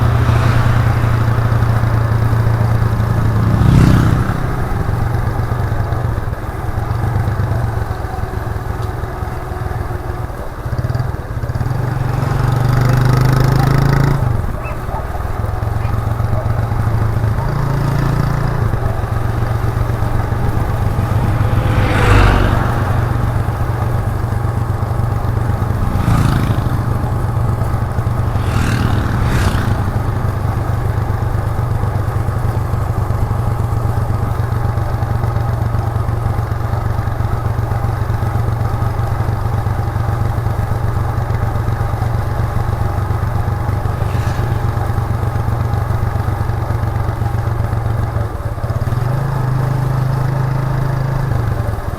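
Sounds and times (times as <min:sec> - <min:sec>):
motorcycle engine cruising: 0:00.0 - 0:51.9.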